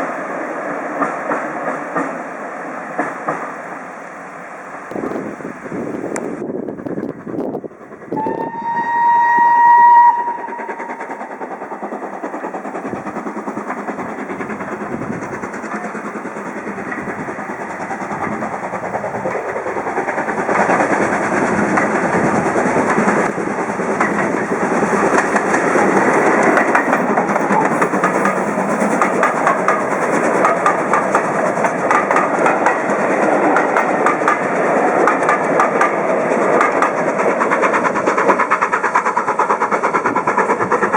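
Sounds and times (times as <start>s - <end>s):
steam train running past: 0.0s - 40.9s
wheels clacking over rail joints: 0.8s - 2.3s, 2.9s - 3.6s, 6.0s - 40.9s
steam locomotive whistle: 8.1s - 11.0s.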